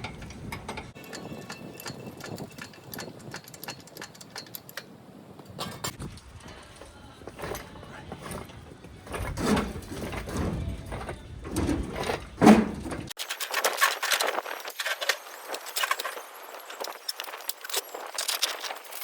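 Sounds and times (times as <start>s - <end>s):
light metallic clinks: 0.0s - 5.9s
handling noise: 0.0s - 19.0s.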